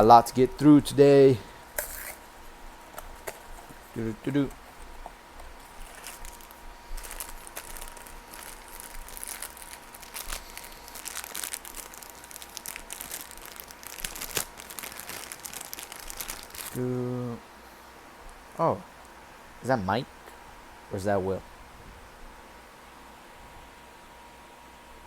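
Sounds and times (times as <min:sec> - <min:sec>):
package crinkling and tearing: 0:02.9 - 0:16.8.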